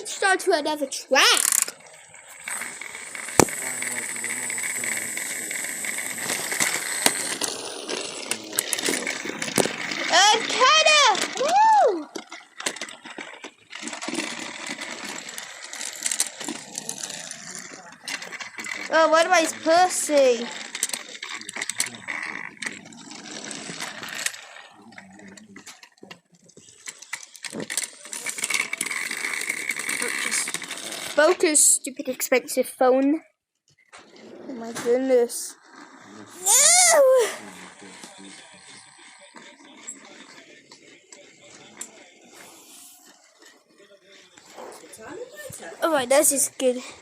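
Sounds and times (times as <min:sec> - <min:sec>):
toy train motor whine: 0:00.0 - 0:32.4, 0:34.0 - 0:47.0
clicks and clacks of wheels: 0:00.2 - 0:31.8.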